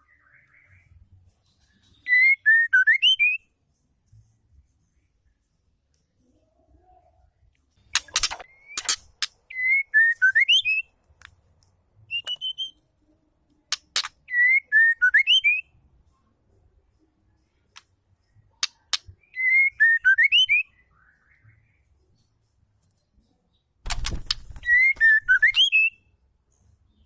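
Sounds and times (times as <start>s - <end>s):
bird whistling: 2.0s - 3.4s, 8.0s - 10.9s, 12.1s - 12.8s, 14.3s - 15.7s, 19.2s - 21.4s, 24.0s - 26.0s
bird clicks: 7.9s - 9.4s, 13.7s - 14.2s, 18.6s - 19.1s, 23.9s - 25.6s.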